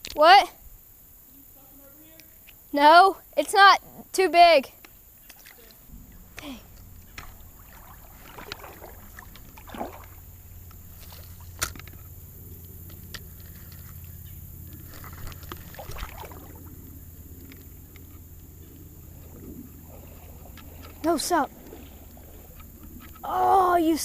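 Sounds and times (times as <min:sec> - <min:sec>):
water splashing around wading legs: 0:05.2 - 0:23.2.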